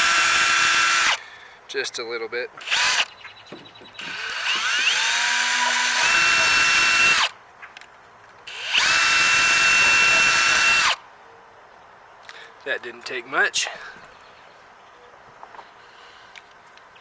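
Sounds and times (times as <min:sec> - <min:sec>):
electric drill boring: 0:00.0 - 0:01.2, 0:02.6 - 0:03.0, 0:04.0 - 0:07.3, 0:08.5 - 0:11.0.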